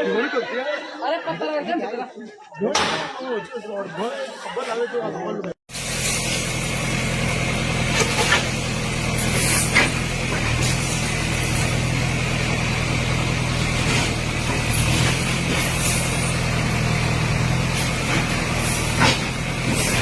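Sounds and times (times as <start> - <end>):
bulldozer diesel engine running: 5.7 - 20.0.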